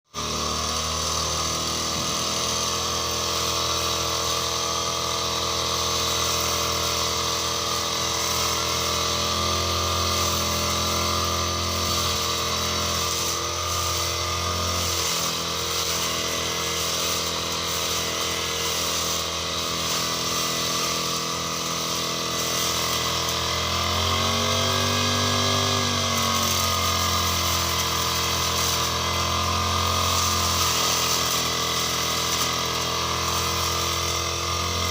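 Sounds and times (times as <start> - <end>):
brush cutter engine running: 0.1 - 34.9.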